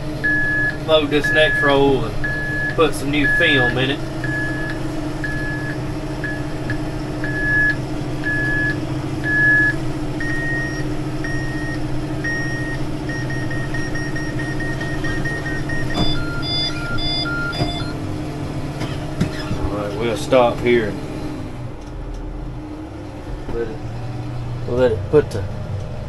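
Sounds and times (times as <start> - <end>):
tractor engine drone: 0.0 - 26.0
control terminal beeping: 0.2 - 18.0.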